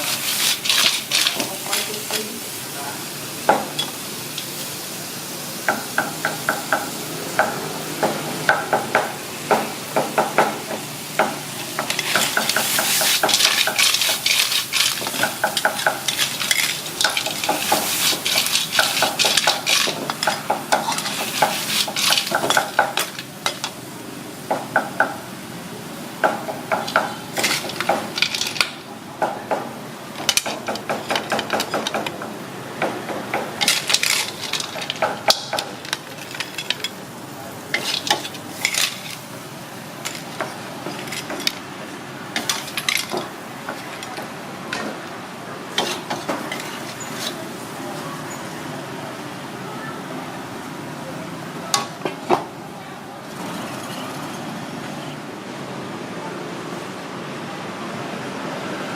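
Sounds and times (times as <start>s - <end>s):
metal spatula scraping wok: 0.0s - 2.4s, 11.4s - 23.8s, 26.3s - 28.8s, 30.2s - 32.2s, 33.4s - 41.6s, 42.3s - 45.0s, 45.7s - 47.5s
food sizzling in pan: 0.0s - 48.5s.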